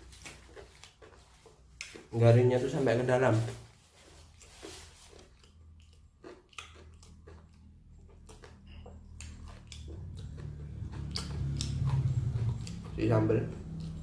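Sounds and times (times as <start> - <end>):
chewing crispy food: 0.0 - 14.0
low hum: 7.4 - 14.0.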